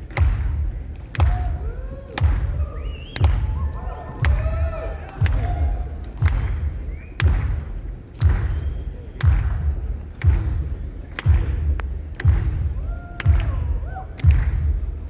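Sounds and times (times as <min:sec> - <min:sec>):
deep heartbeat-like thump: 0:00.0 - 0:15.0
faint crowd voices: 0:00.0 - 0:15.0
whistle: 0:02.2 - 0:04.8, 0:06.4 - 0:07.6, 0:08.3 - 0:09.1.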